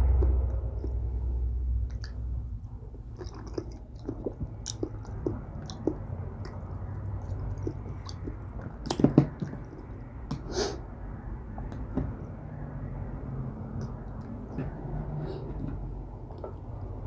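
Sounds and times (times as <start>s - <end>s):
person chewing: 1.9s - 10.8s.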